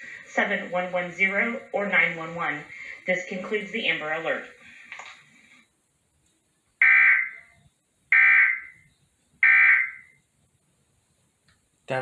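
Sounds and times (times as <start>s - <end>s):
electronic data bursts: 6.8s - 7.5s, 8.1s - 10.2s.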